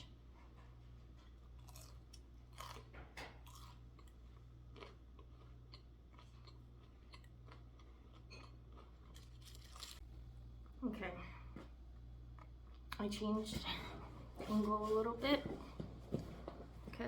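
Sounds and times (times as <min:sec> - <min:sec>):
steady low hum: 0:00.0 - 0:17.0
chewing crispy food: 0:01.0 - 0:10.8.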